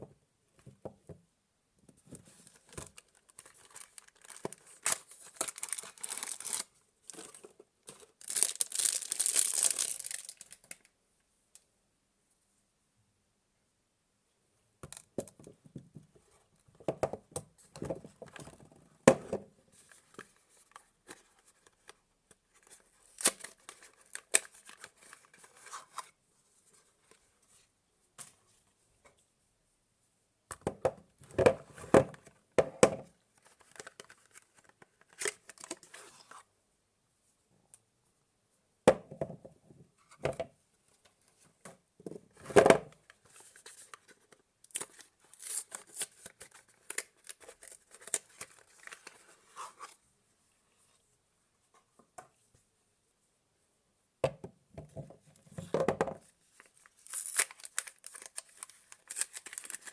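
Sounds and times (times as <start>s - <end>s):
wrapper tearing and crinkling: 2.9s - 7.4s, 8.1s - 10.8s, 56.6s - 59.9s.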